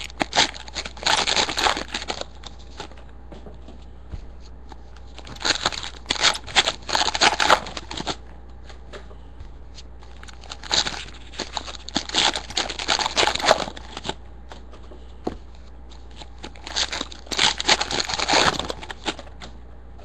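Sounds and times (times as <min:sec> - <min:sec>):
wrappers tearing and crinkling: 0:00.0 - 0:03.0, 0:05.1 - 0:08.2, 0:10.1 - 0:14.2, 0:16.1 - 0:19.3.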